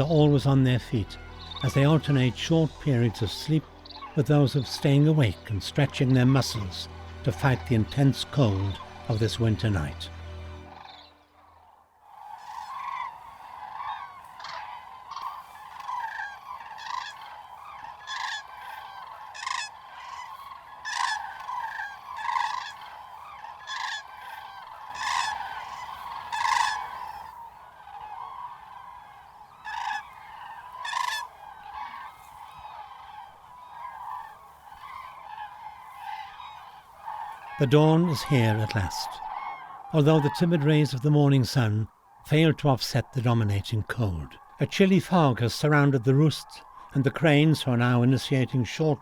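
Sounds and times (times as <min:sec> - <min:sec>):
cranes trumpeting chorus: 0:00.0 - 0:49.0
single crane calls nearby: 0:10.2 - 0:40.7.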